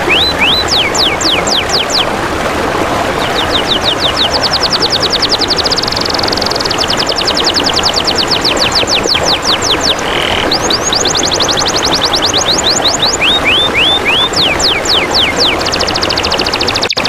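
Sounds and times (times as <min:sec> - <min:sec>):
songbird singing: 0:00.0 - 0:02.1, 0:03.2 - 0:17.0
trickling water: 0:00.0 - 0:17.0.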